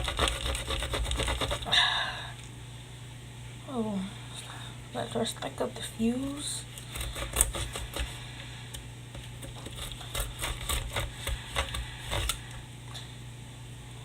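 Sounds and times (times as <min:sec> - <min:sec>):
blade cutting cardboard tube: 0:00.0 - 0:01.7, 0:06.9 - 0:08.2, 0:09.4 - 0:12.4.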